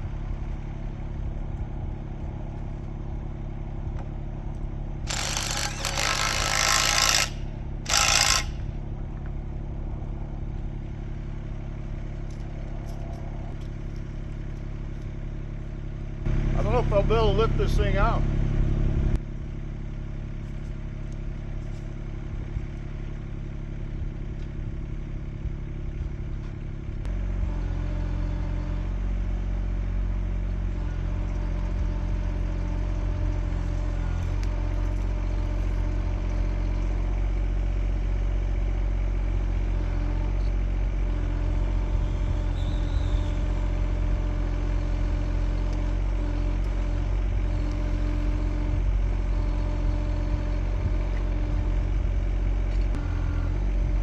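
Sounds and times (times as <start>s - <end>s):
excavator engine running under load: 0.0s - 54.0s.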